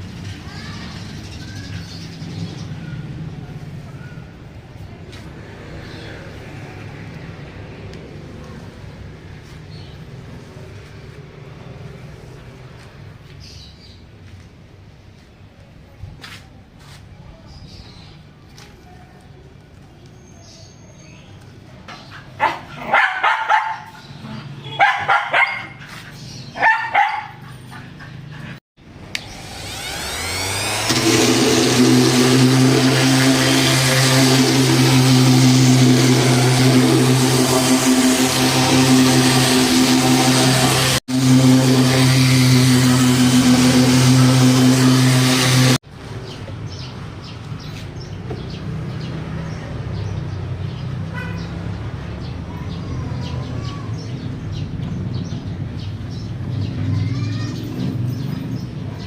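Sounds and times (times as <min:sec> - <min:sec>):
birds chirping: 0:00.0 - 0:07.4, 0:17.3 - 0:32.1, 0:46.0 - 0:59.0
dog barking: 0:22.4 - 0:24.0, 0:24.7 - 0:25.8, 0:26.6 - 0:27.5
motor humming: 0:29.0 - 0:45.8.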